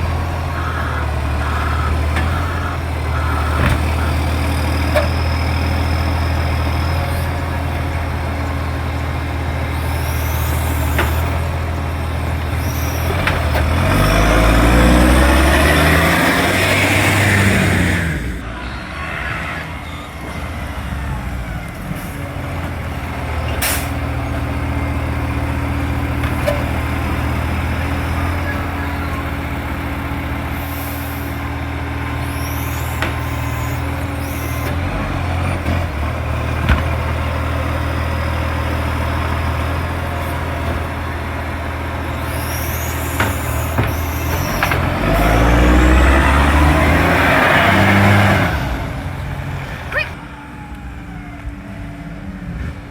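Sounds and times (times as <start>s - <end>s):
diesel truck engine running: 0.0s - 52.9s.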